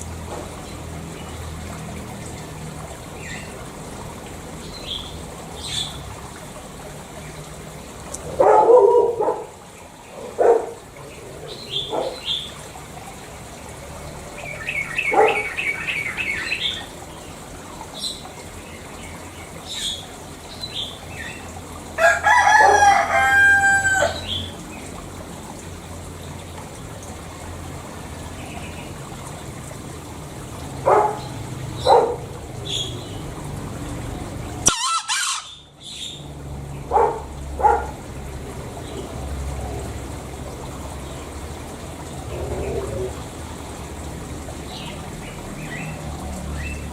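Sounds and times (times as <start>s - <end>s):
bird chirping call: 14.4s - 16.9s
junglefowl crowing: 22.0s - 24.5s, 34.6s - 35.6s.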